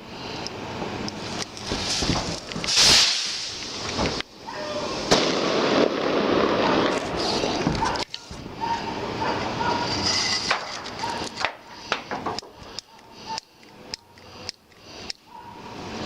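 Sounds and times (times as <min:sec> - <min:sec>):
firecrackers popping and banging: 0:01.2 - 0:04.3, 0:05.0 - 0:08.5, 0:09.8 - 0:12.7.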